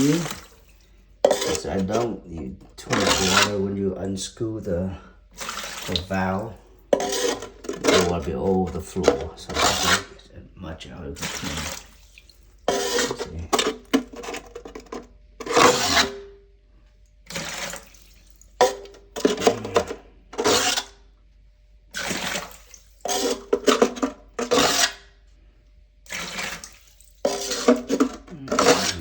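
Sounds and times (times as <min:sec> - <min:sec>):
water splashing into bucket: 0:00.0 - 0:02.1, 0:05.3 - 0:10.0, 0:11.2 - 0:14.1, 0:17.3 - 0:19.9, 0:22.0 - 0:23.9, 0:26.1 - 0:29.0.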